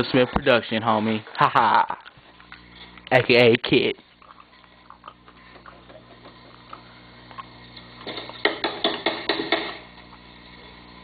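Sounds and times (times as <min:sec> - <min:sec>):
hard objects clicking and knocking: 0:08.0 - 0:09.8.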